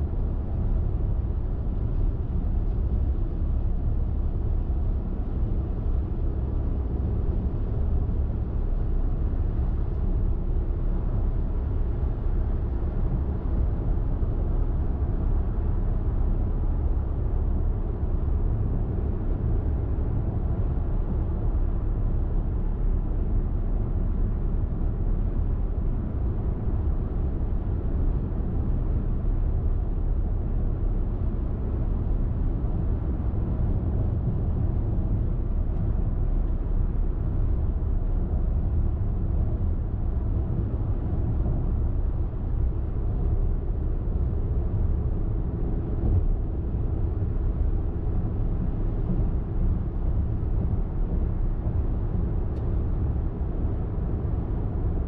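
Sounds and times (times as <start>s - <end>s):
car driving at highway speed: 30.5s - 55.0s.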